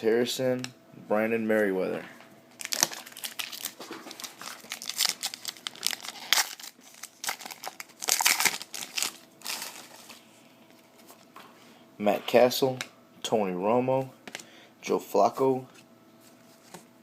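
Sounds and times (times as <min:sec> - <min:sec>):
wrapper crinkling and tearing: 0:02.6 - 0:10.2.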